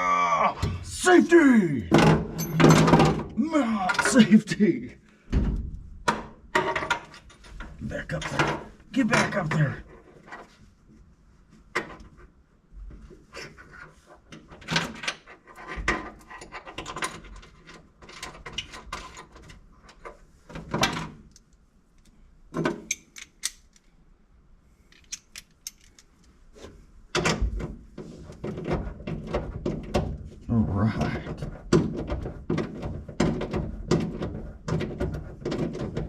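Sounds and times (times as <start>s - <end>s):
metal buckles clinking and rattling: 2.3s - 3.0s, 24.9s - 26.4s.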